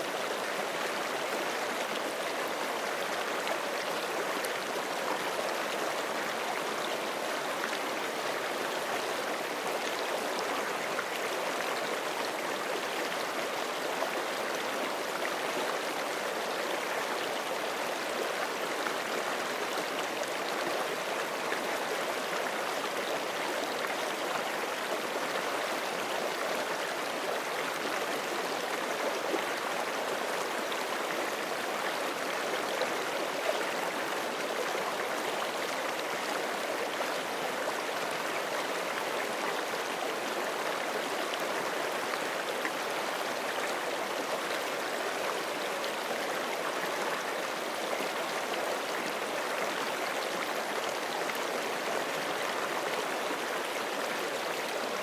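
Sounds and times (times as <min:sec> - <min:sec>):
creek flowing over rocks: 0:00.0 - 0:55.0.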